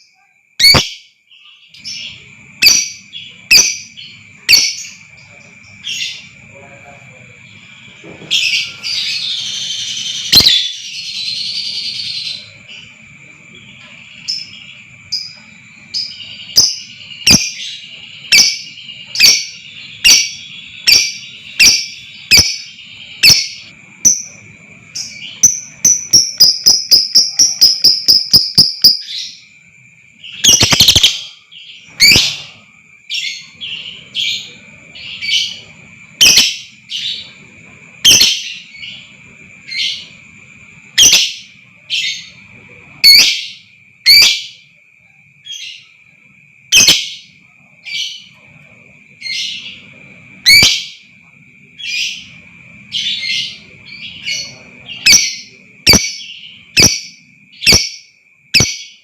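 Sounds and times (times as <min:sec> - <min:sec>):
bird shrill calls and chirps: 0:00.0 - 0:05.1, 0:14.2 - 0:29.4, 0:30.2 - 0:35.6, 0:36.2 - 0:37.3, 0:50.5 - 0:51.0.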